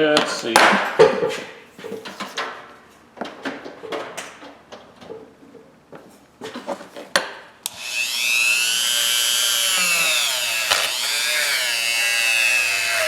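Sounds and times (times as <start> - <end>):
small power tool whining: 7.7 - 13.0.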